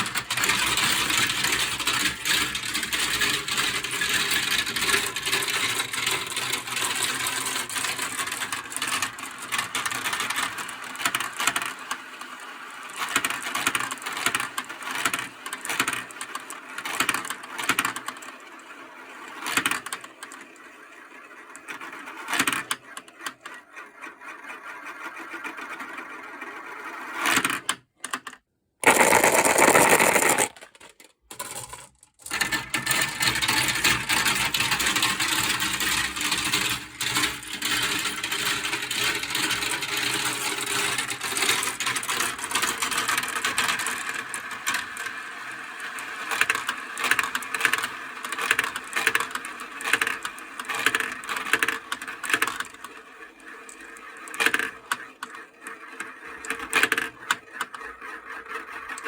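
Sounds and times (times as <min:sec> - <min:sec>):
marbles rolling and clattering: 0:00.0 - 0:11.2, 0:28.8 - 0:45.2.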